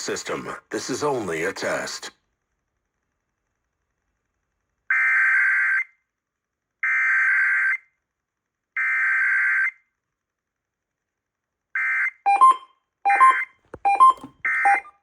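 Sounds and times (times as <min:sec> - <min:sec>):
two-tone modem data bursts: 0:12.3 - 0:15.0.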